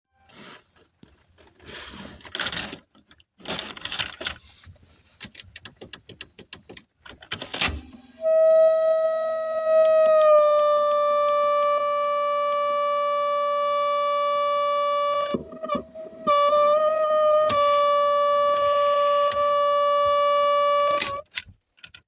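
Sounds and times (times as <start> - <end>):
cassette deck clicks and rattles: 5.2 - 8.1
loud steady whining tone: 7.8 - 21.2.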